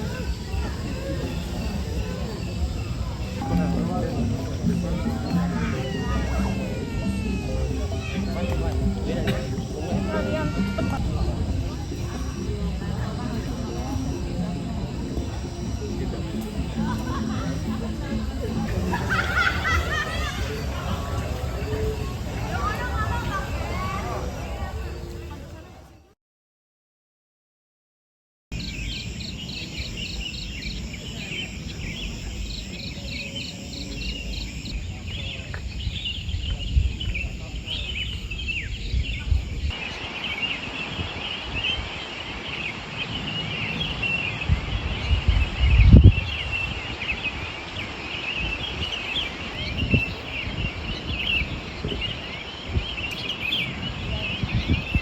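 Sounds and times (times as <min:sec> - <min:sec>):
rapid ticking insect call: 0:00.0 - 0:25.3, 0:28.6 - 0:38.9
birds chirping: 0:00.0 - 0:25.8, 0:28.6 - 0:55.0
insects chirping: 0:00.0 - 0:26.0, 0:28.6 - 0:55.0.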